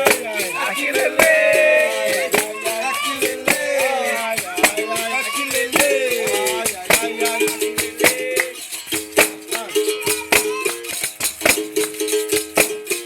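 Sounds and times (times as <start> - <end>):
pandeiro slaps: 0.0 - 1.5, 3.3 - 4.9, 5.6 - 8.6, 9.2 - 12.8
person singing: 0.0 - 8.7, 9.5 - 11.0.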